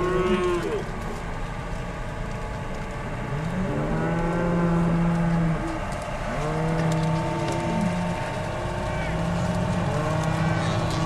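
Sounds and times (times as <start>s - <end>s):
cattle mooing: 0.0s - 0.8s, 3.3s - 11.0s
steady low rumble: 0.0s - 11.0s.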